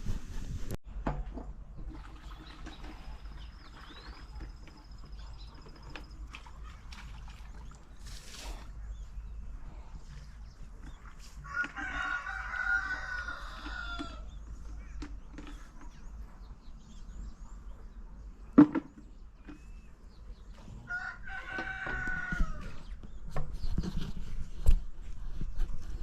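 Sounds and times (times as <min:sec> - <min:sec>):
rooster crowing: 0:11.4 - 0:14.2, 0:20.8 - 0:22.8.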